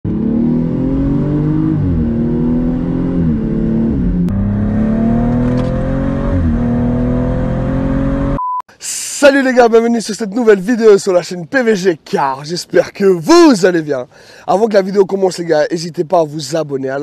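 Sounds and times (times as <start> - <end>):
car engine accelerating: 0.1 - 8.4.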